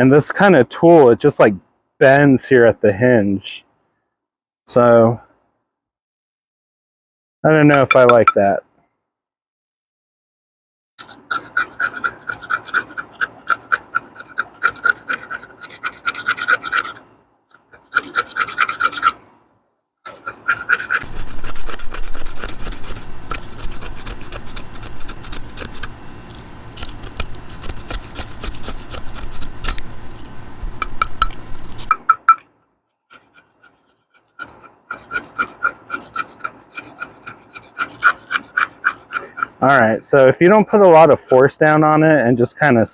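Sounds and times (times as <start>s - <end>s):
metal grater rasping on wood: 11.0s - 19.2s, 20.1s - 32.3s, 33.1s - 39.6s.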